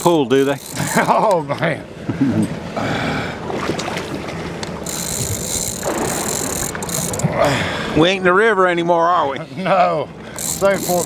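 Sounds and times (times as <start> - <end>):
fishing reel clicking: 0.0 - 1.1, 4.8 - 7.3, 10.4 - 11.0
water noise: 0.0 - 9.0, 10.0 - 11.0
wind: 0.0 - 11.0.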